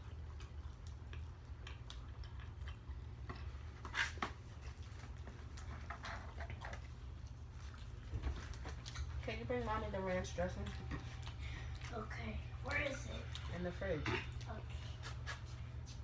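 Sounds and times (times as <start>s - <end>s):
person chewing: 0.0s - 9.2s
steady low hum: 0.0s - 16.0s.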